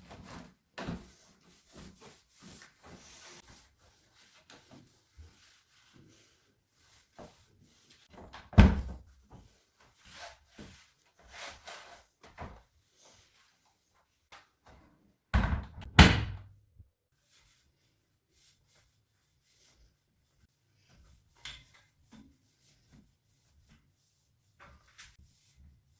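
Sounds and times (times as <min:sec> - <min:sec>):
cabinet doors knocking shut: 0:15.4 - 0:16.5.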